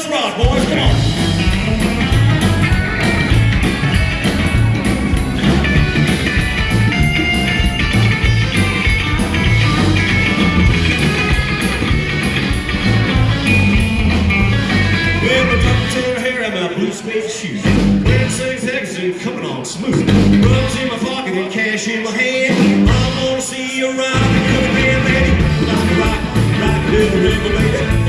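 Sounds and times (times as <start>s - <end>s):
steady drum beat: 0.4s - 16.4s, 17.6s - 18.6s, 20.0s - 20.9s, 22.5s - 23.4s, 24.2s - 28.0s
walking bass line: 0.4s - 16.4s, 17.6s - 18.6s, 20.0s - 20.9s, 22.8s - 23.4s, 24.2s - 28.0s
electric guitar lead: 0.4s - 18.5s, 24.1s - 28.0s.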